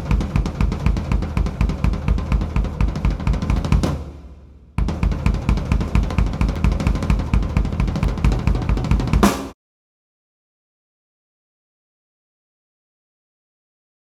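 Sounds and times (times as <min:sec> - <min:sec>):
drum kit playing: 0:00.0 - 0:09.6.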